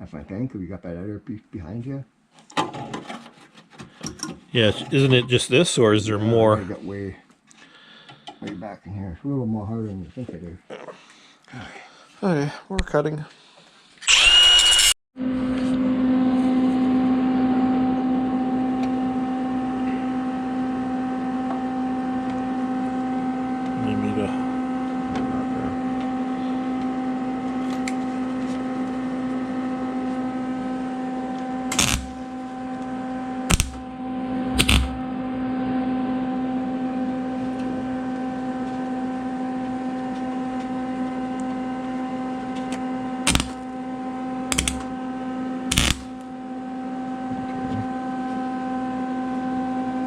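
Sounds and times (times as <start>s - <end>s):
sharp bursts of metalwork: 14.0s - 15.0s, 31.7s - 32.2s, 33.5s - 33.8s, 34.6s - 34.9s, 43.3s - 43.6s, 44.5s - 44.8s, 45.7s - 46.2s
steady machine hum: 15.2s - 49.9s.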